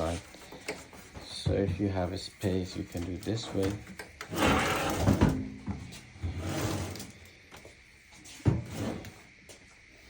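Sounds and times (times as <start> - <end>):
metal panel scraping: 4.2 - 5.5, 6.2 - 7.1.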